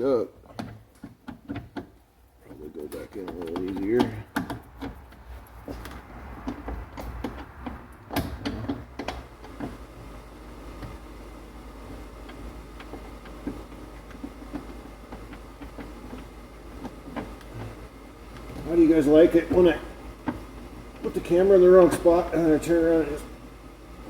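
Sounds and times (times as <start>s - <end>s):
steady low hum: 0.0s - 24.0s
sharp clicks and knocks: 0.5s - 9.8s, 12.2s - 22.1s.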